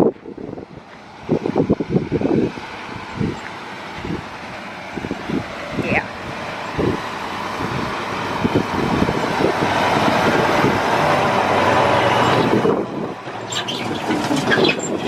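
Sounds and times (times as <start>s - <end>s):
tractor engine passing: 0.2s - 15.0s
clatter of towed equipment: 11.9s - 15.0s.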